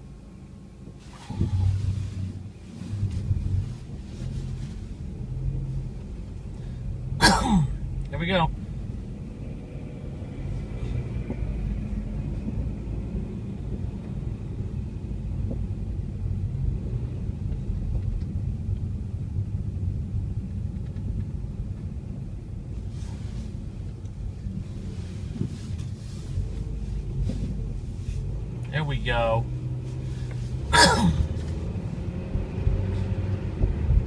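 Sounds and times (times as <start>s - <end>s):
car engine and road rumble: 0.0s - 34.0s.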